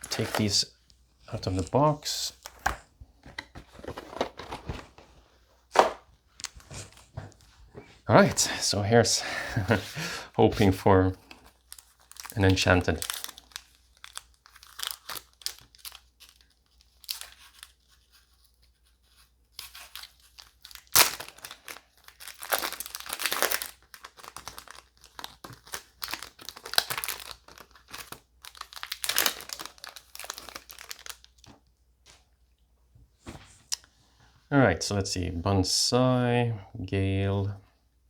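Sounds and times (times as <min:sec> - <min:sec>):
foil wrapper crinkling and tearing: 0:00.0 - 0:00.6, 0:10.6 - 0:31.5.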